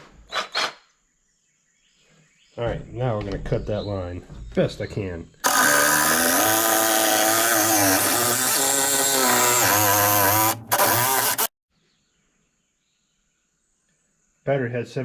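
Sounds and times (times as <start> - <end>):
cordless saw cutting: 5.4 - 11.5.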